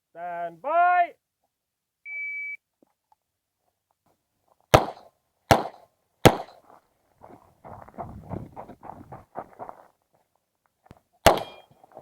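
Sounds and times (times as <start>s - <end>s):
shot timer beep: 2.1s - 2.6s, 11.4s - 11.7s
pistol shots: 4.7s - 6.6s, 11.2s - 11.7s.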